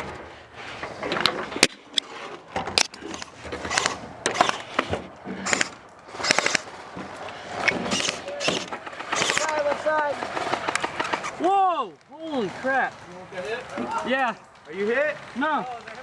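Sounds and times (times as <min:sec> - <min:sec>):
sharp clicks and knocks: 0:00.8 - 0:11.4.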